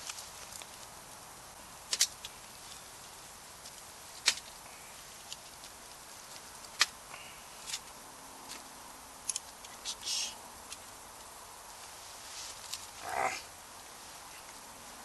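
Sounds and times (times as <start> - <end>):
fire crackling pops: 0.0 - 9.8
wood fire hissing: 0.0 - 15.0.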